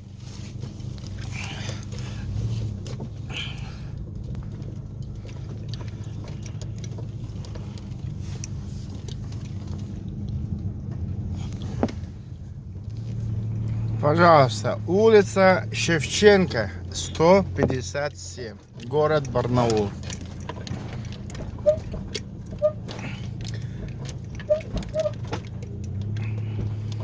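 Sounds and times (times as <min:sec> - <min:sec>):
car engine running: 0:00.0 - 0:27.0
road noise: 0:00.0 - 0:27.0
short squeaks: 0:20.9 - 0:23.4, 0:24.1 - 0:26.5.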